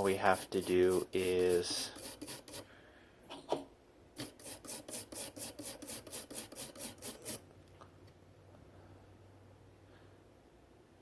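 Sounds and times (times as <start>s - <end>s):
brush scrubbing circuit board: 0.0s - 2.7s, 4.2s - 7.5s.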